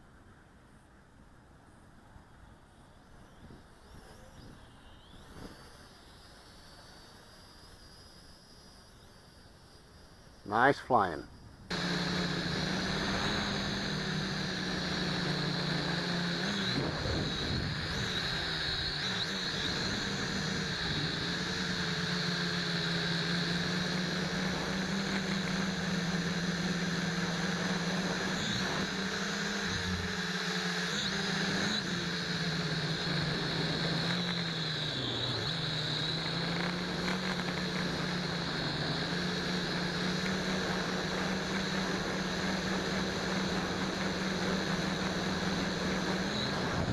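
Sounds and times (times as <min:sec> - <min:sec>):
drone propellers buzzing: 0:11.7 - 0:46.9.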